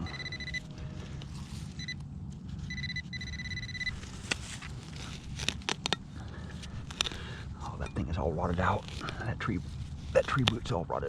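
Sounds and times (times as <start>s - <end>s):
metal detector high beep: 0.0s - 0.7s, 1.8s - 2.0s, 2.7s - 4.0s.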